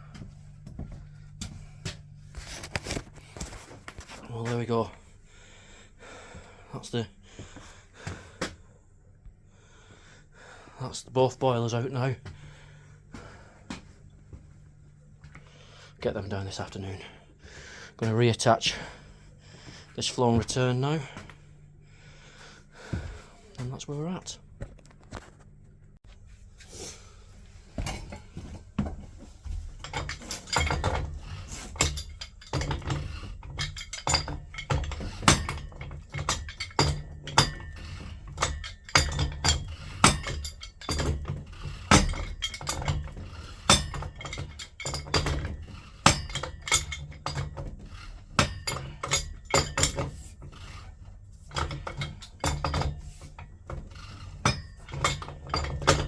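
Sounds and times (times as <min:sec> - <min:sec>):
low hum: 0:00.0 - 0:06.6
metal tools clinking on pipes: 0:27.4 - 0:56.0.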